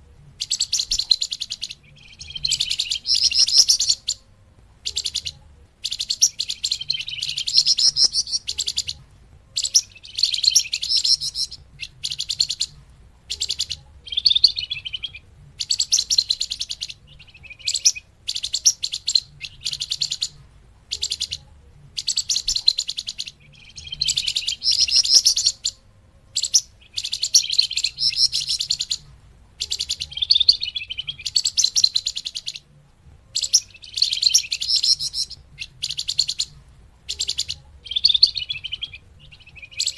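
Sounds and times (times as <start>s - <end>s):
bird chattering trills: 0.4s - 29.0s, 29.6s - 32.7s, 33.3s - 39.9s.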